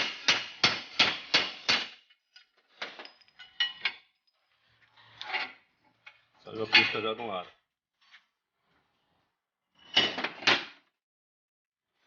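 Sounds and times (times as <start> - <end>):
metallic clinks and rattles: 2.3 - 5.4.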